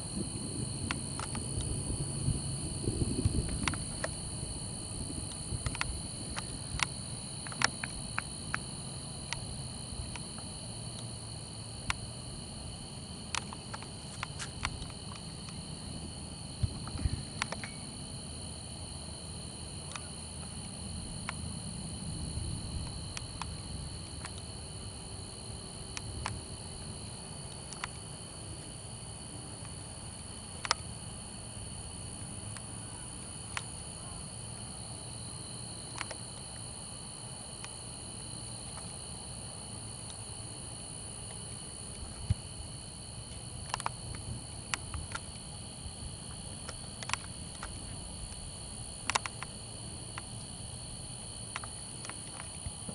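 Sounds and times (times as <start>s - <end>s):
low rumble: 0.0s - 6.8s
crickets chirring: 0.0s - 52.9s
sharp clicks: 49.0s - 49.5s.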